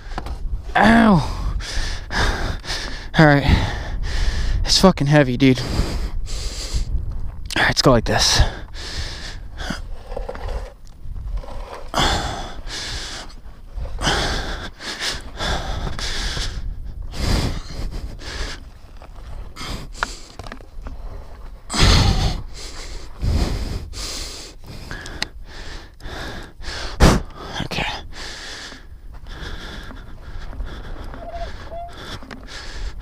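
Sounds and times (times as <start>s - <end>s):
man breathing hard and gasping: 1.0s - 4.7s, 5.6s - 7.0s, 8.3s - 10.0s, 11.9s - 18.7s, 21.7s - 33.0s.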